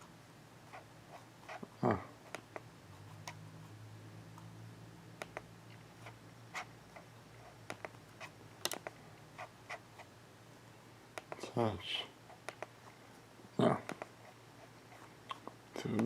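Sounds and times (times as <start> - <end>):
faint low hum: 0.0 - 16.0
computer mouse clicks: 5.2 - 5.5, 7.6 - 8.0, 8.6 - 9.0, 12.4 - 12.7.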